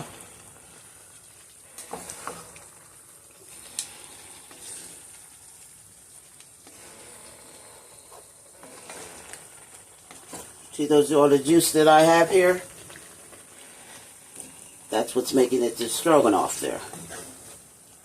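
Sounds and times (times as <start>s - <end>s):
beef sizzling in a pan: 0.0s - 18.0s
utensil scraping a pan: 1.8s - 2.7s, 3.4s - 5.2s, 6.6s - 10.6s, 16.0s - 17.7s.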